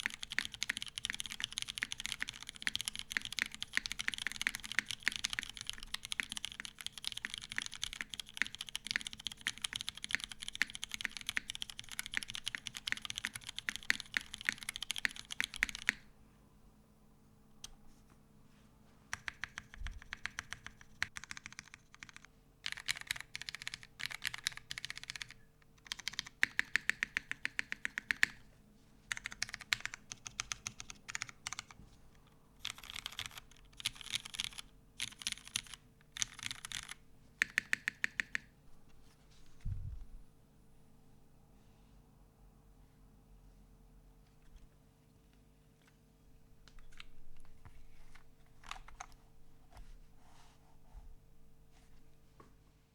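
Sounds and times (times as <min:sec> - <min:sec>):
typing on mechanical keyboard: 0:00.0 - 0:16.0, 0:19.1 - 0:28.4, 0:29.1 - 0:31.8, 0:32.6 - 0:38.5, 0:48.2 - 0:49.2.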